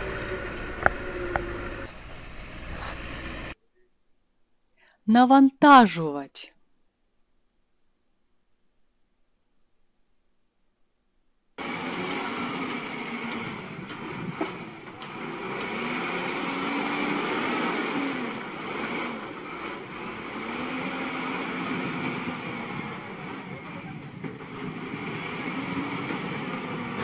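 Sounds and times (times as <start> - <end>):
loader engine revving: 0.0 - 3.6, 11.6 - 27.0.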